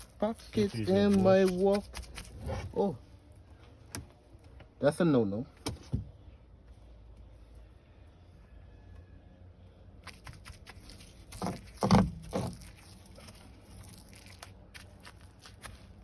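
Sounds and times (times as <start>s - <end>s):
wet fiberglass cloth crackling: 0.0s - 3.3s, 10.0s - 16.0s.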